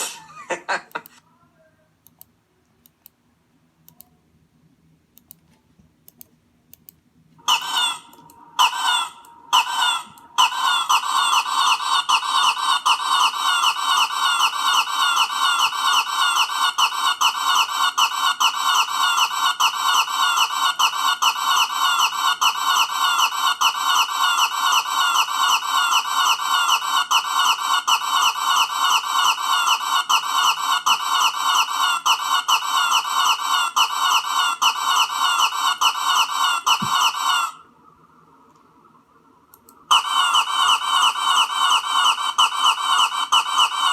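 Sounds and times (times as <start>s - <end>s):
warbling cluck-like squawk effect: 7.4s - 37.7s, 39.9s - 43.9s.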